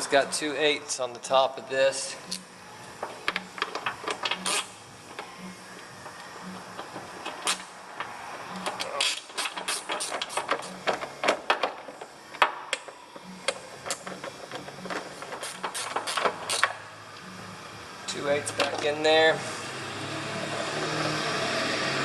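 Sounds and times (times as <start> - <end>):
faint steady hum: 0.0 - 9.5, 16.2 - 20.6.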